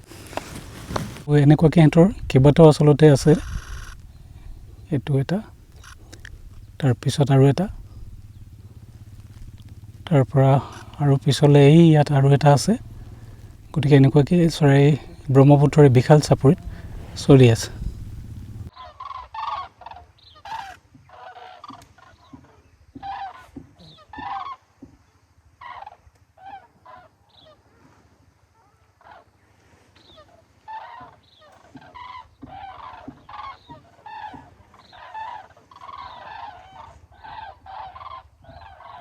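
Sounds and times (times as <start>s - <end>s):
cranes honking calls: 0.0s - 18.7s.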